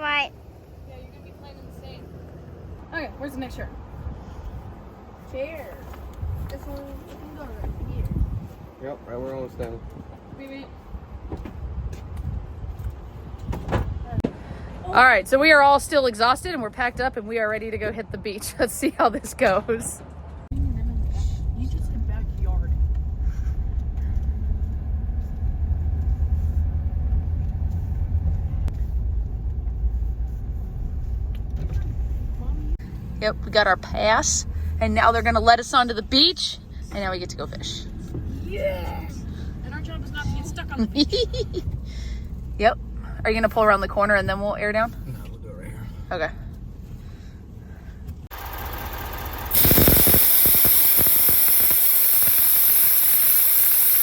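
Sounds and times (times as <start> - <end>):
vehicle driving low rumble: 0.0 - 54.0
air hissing out of a tire: 49.2 - 54.0.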